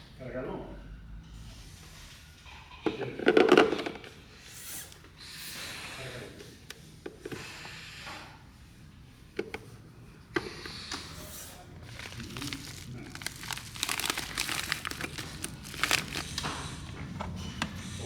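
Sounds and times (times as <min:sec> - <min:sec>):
plastic packaging crinkling: 0:11.7 - 0:16.6.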